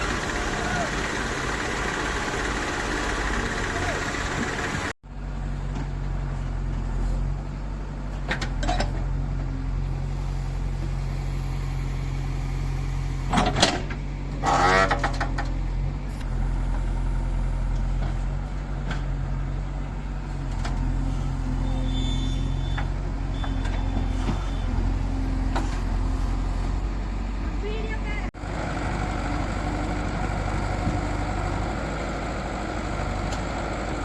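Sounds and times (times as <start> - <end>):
diesel engine running: 0.0 - 34.0
short pitched squeal: 21.6 - 24.8.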